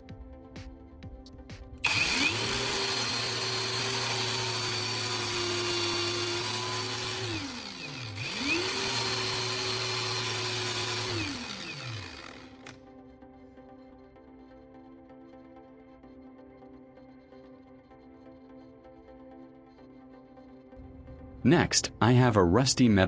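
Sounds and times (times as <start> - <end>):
angle grinder whining: 1.8 - 12.8.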